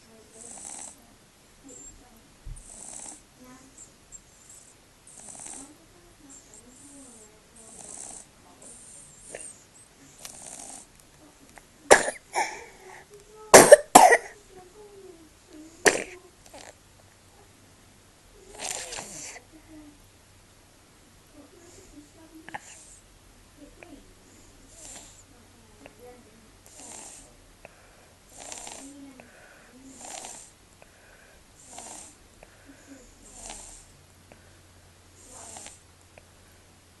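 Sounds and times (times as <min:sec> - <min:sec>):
baby snoring through blocked nose: 0:00.3 - 0:01.0, 0:02.6 - 0:03.2, 0:04.4 - 0:09.6, 0:10.2 - 0:10.9, 0:18.4 - 0:19.4, 0:24.6 - 0:25.3, 0:26.7 - 0:27.4, 0:28.3 - 0:29.0, 0:29.9 - 0:30.6, 0:31.6 - 0:32.2, 0:33.2 - 0:33.9, 0:35.2 - 0:35.8
congested breathing: 0:02.5 - 0:11.0, 0:11.6 - 0:16.8, 0:18.4 - 0:19.9, 0:21.5 - 0:23.1, 0:23.8 - 0:36.8
baby coughing: 0:11.9 - 0:12.7, 0:13.5 - 0:14.4, 0:15.8 - 0:16.2.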